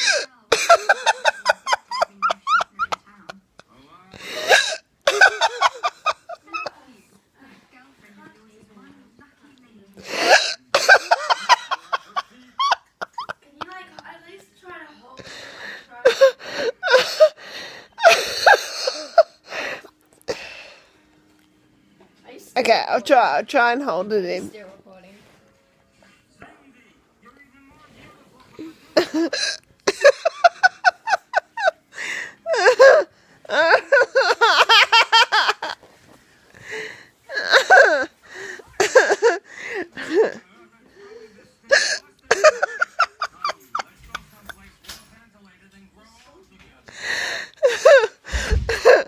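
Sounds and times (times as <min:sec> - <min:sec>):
person giggling breathily: 0:47.0 - 0:49.0.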